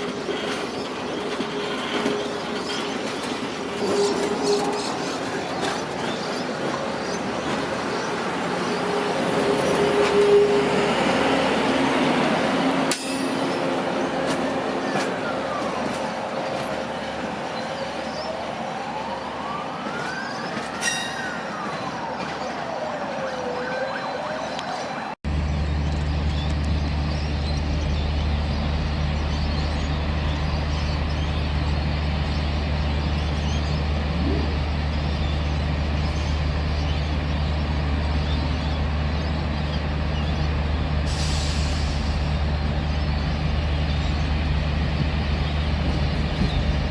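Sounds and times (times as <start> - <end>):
siren wailing: 18.3 - 25.2
diesel locomotive idling: 25.3 - 46.9.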